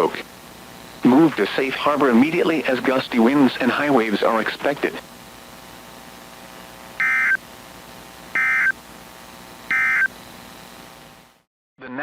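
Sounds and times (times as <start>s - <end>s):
faint steady hum: 0.0s - 11.5s
digital data bursts: 7.0s - 7.4s, 8.3s - 8.8s, 9.7s - 10.2s.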